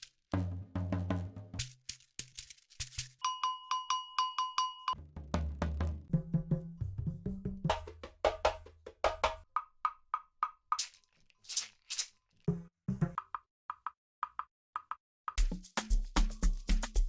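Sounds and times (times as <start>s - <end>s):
quick drum hits: 7.1s - 9.4s, 15.4s - 17.0s.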